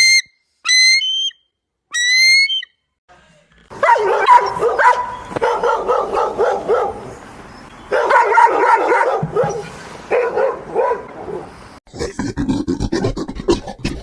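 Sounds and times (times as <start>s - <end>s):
dog yipping and whining: 3.8s - 6.9s.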